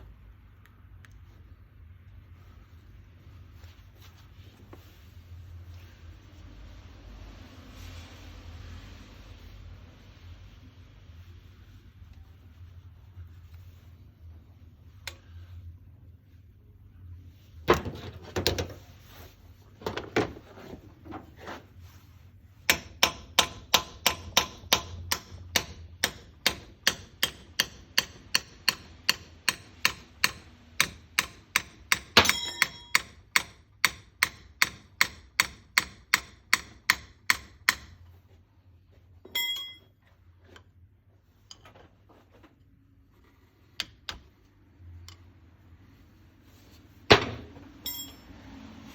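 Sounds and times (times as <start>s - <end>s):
hammer tapping on metal: 22.7s - 38.0s
metal part ringing: 32.2s - 33.2s, 39.2s - 39.9s, 47.8s - 48.4s.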